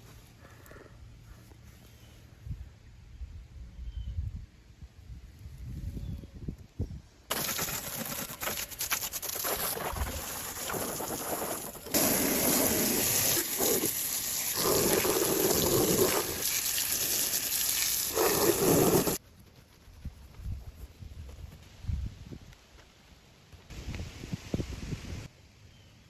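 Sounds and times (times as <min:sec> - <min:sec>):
water spraying hiss: 0:07.3 - 0:19.2.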